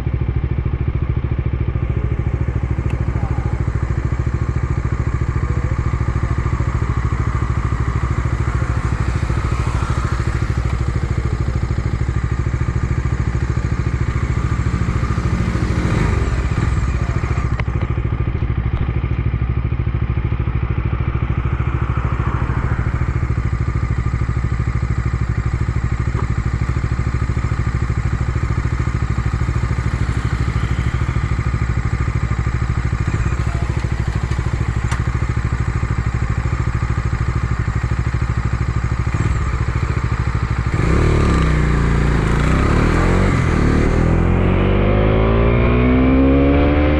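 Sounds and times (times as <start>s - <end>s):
motorcycle engine running: 0.0s - 46.9s.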